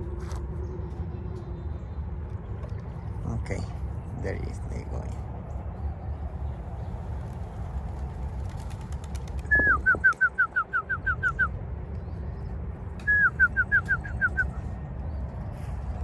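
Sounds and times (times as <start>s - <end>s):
steady low rumble: 0.0s - 10.2s, 13.8s - 16.0s
songbird whistling: 9.4s - 11.5s, 13.0s - 14.6s.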